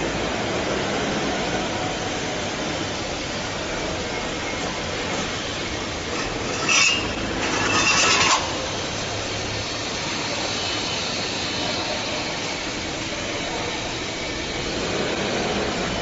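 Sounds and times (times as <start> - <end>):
steady mechanical noise: 0.0 - 16.0
ringing metallic clanks: 6.1 - 8.8.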